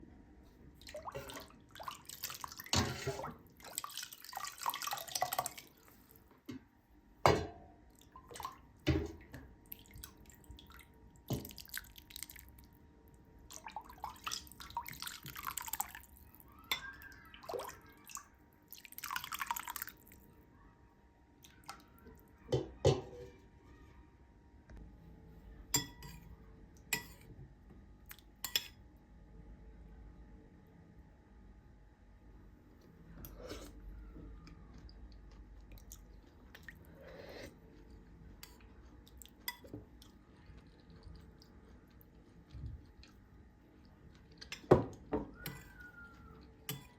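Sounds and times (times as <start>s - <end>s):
dishes and utensils clinking: 22.5s - 23.3s, 25.8s - 26.2s, 44.4s - 46.0s, 46.7s - 46.9s.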